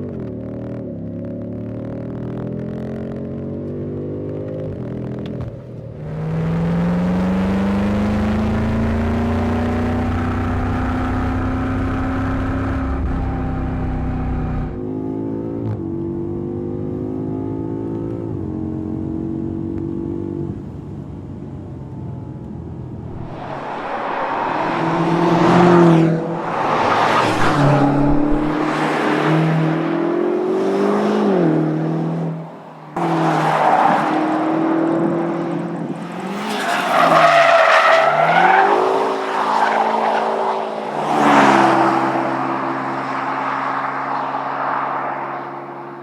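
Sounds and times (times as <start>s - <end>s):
car engine accelerating hard: 6.0s - 15.8s, 23.0s - 46.0s.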